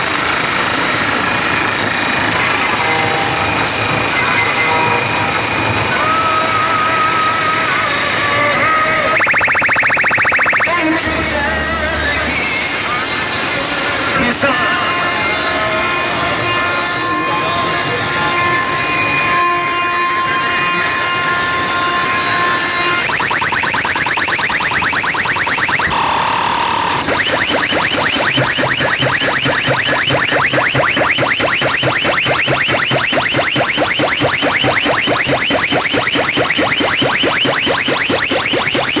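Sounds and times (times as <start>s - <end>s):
electronic held tones: 9.0s - 10.9s, 23.0s - 39.0s
rising electronic chirps: 9.1s - 10.9s, 23.1s - 39.0s.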